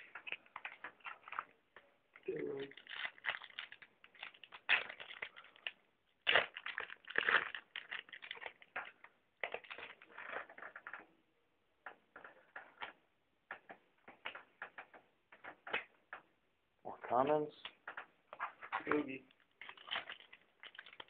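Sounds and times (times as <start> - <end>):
cards flipping with papery clicks: 2.4 - 11.0.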